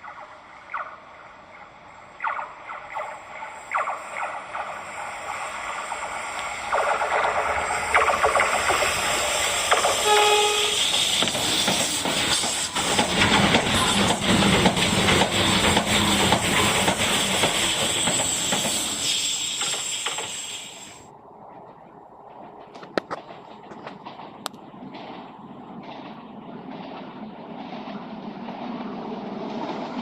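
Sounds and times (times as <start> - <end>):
train wheels clacking on rails: 2.3 - 21.0, 22.2 - 30.0.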